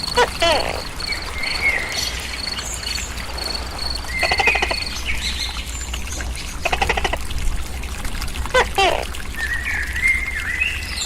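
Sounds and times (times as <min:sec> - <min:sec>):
gecko buzzy croaks: 0:00.0 - 0:02.6, 0:03.8 - 0:04.9, 0:06.6 - 0:07.2
crickets chirping: 0:00.0 - 0:05.8.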